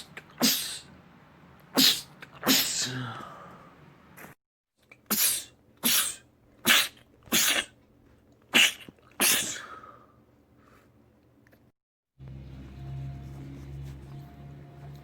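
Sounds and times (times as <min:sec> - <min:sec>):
man sneezing: 0:01.8 - 0:03.3, 0:05.1 - 0:07.7, 0:08.5 - 0:09.8.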